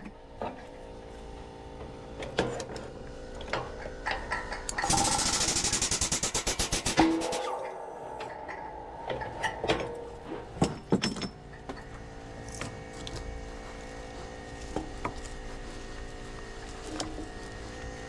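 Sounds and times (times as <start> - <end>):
steady hum: 4.7 - 18.0
metal clanks and knocks: 7.0 - 12.8.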